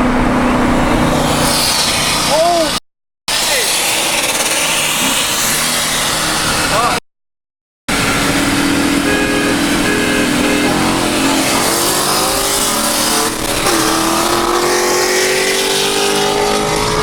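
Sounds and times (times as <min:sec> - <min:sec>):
car engine accelerating: 0:00.0 - 0:07.0, 0:07.9 - 0:17.0.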